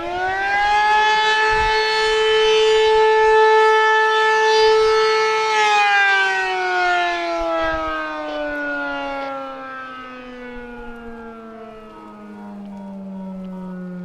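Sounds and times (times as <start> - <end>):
warning siren falling in pitch: 0.0 - 14.0.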